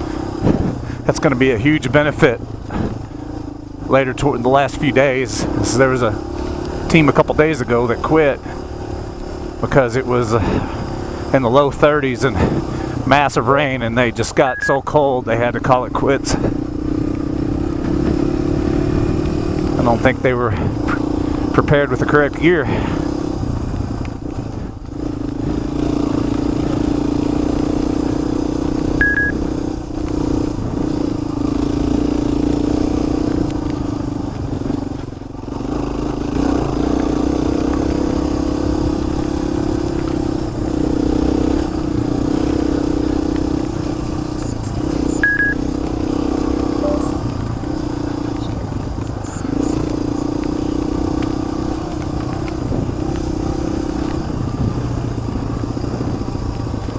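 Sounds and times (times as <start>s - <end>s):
motorcycle engine running: 0.0s - 56.9s
short high beeps: 14.5s - 14.8s, 29.0s - 29.4s, 45.2s - 45.6s, 46.8s - 47.2s.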